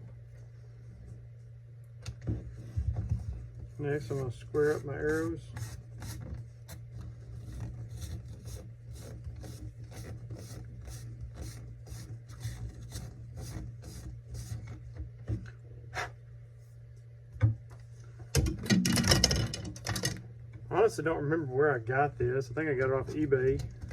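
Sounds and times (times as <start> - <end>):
arrow shaft scraping on abrasive: 3.8 - 6.4.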